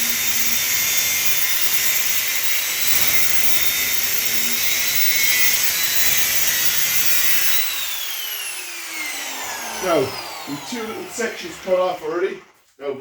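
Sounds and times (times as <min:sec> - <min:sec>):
angle grinder cutting metal: 0:00.0 - 0:12.2.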